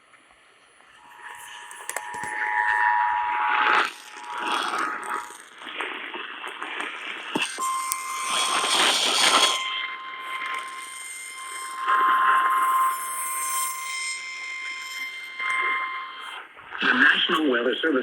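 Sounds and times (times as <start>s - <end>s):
hissing noise: 1.0s - 12.7s
two-tone attention signal: 7.2s - 16.3s.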